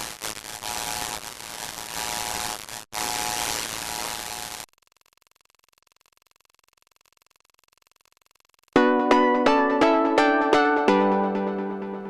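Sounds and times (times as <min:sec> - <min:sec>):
loud static hiss: 0:00.0 - 0:04.7
steady buzzing tone: 0:00.0 - 0:08.8
faint fast ticking: 0:04.7 - 0:08.8.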